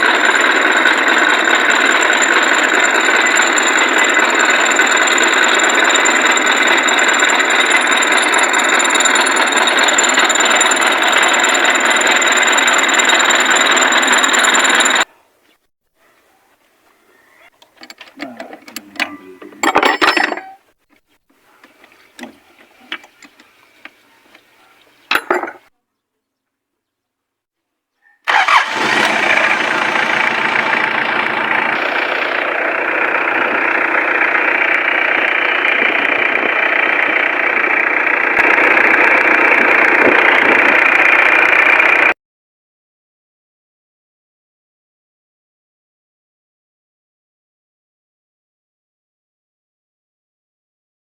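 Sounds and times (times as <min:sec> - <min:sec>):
diesel engine starting and idling: 0:00.0 - 0:15.0, 0:28.3 - 0:42.2.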